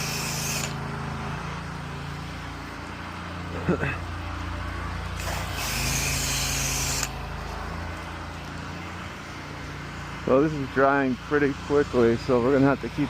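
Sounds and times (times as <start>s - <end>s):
pressure washer engine running: 0.0s - 13.0s.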